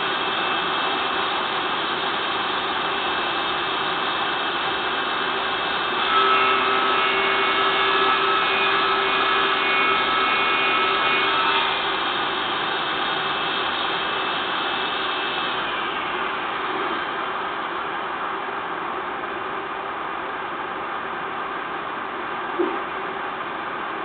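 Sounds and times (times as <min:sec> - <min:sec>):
table saw motor spinning: 0:05.8 - 0:12.4
table saw cutting wood: 0:05.9 - 0:17.2.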